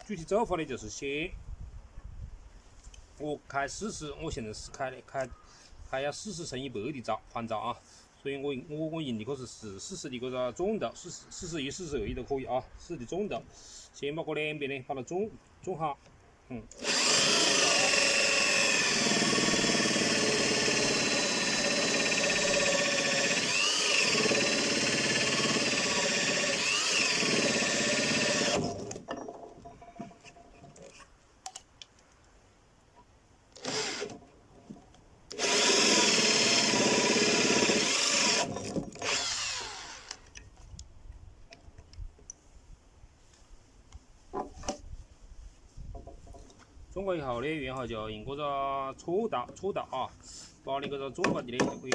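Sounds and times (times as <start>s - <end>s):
electric drill boring into wood: 16.7s - 29.0s, 33.6s - 34.2s, 35.3s - 40.3s.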